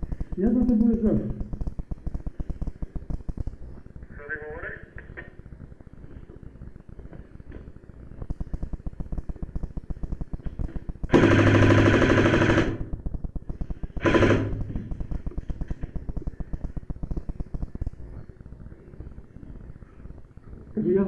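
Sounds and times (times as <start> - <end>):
airsoft gun firing bursts: 8.4 - 17.7.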